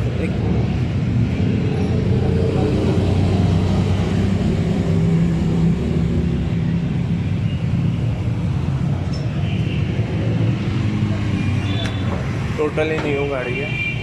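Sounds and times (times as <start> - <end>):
street noise: 0.0 - 14.0.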